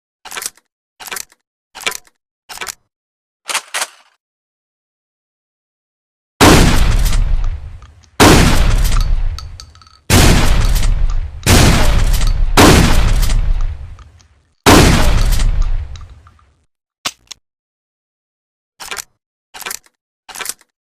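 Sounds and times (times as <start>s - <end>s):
shotgun shots: 6.4s - 16.2s.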